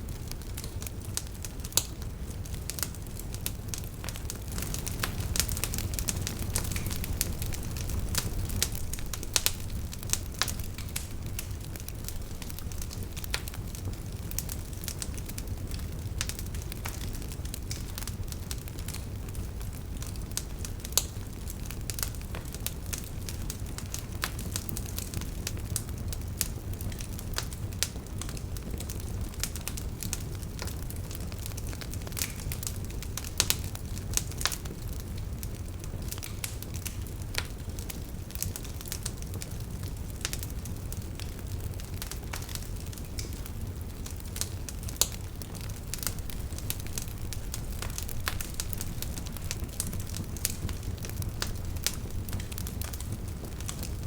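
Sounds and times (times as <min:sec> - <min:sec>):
wood fire crackling: 0:00.0 - 0:54.0
louder pops of fire: 0:00.4 - 0:19.3, 0:35.8 - 0:54.0.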